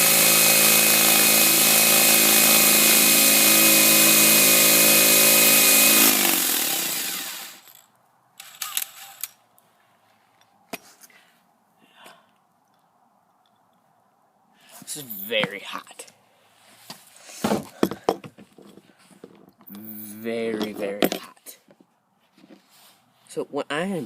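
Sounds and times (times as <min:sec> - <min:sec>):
power drill boring into steel: 0:00.0 - 0:07.8, 0:08.4 - 0:09.3.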